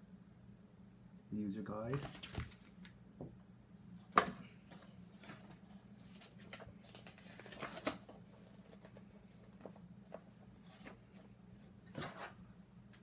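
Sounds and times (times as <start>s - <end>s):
paper rustling: 1.9s - 2.9s, 4.7s - 12.4s.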